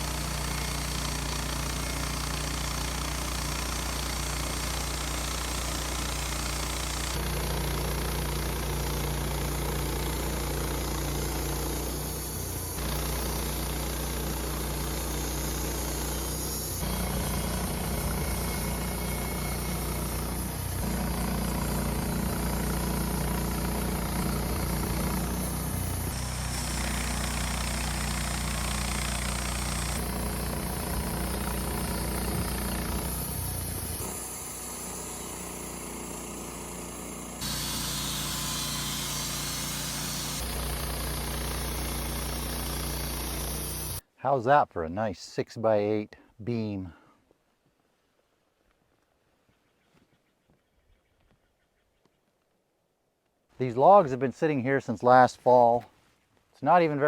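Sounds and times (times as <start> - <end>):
bandsaw sawmill cutting log: 0.0 - 44.0.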